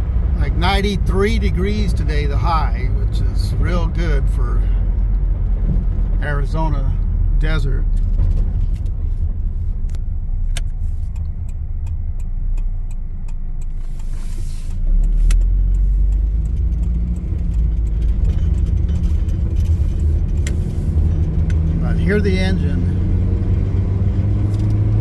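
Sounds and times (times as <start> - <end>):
low road rumble: 0.0 - 25.0
truck engine running: 0.0 - 25.0
brief hiss: 13.8 - 14.8.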